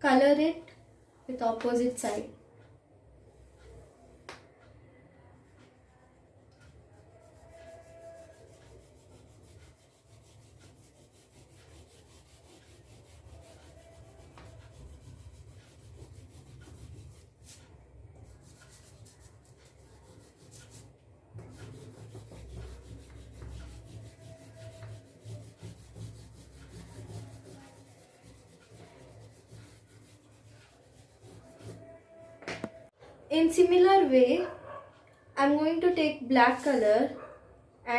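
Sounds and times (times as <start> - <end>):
oil pastel scraping on paper: 6.6 - 32.8.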